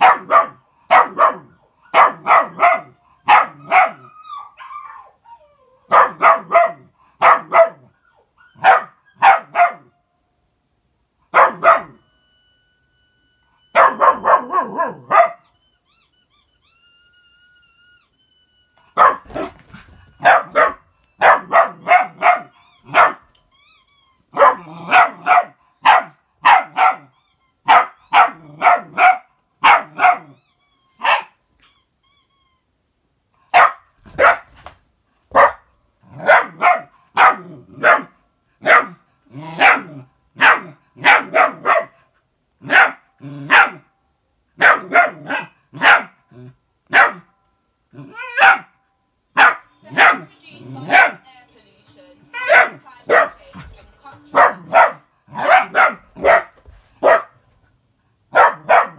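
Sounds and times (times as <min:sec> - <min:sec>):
small dog barking: 0:00.0 - 0:04.1, 0:05.9 - 0:07.9, 0:08.6 - 0:10.0, 0:11.3 - 0:12.0, 0:13.8 - 0:15.4, 0:18.9 - 0:19.6, 0:20.2 - 0:23.2, 0:24.3 - 0:27.1, 0:27.7 - 0:30.4, 0:31.0 - 0:31.4, 0:33.5 - 0:34.6, 0:35.3 - 0:42.0, 0:42.6 - 0:43.9, 0:44.6 - 0:46.2, 0:46.9 - 0:47.3, 0:48.0 - 0:48.8, 0:49.4 - 0:51.2, 0:52.3 - 0:53.6, 0:54.2 - 0:57.4, 0:58.3 - 0:58.9
faint high warbling tone: 0:16.9 - 0:23.0.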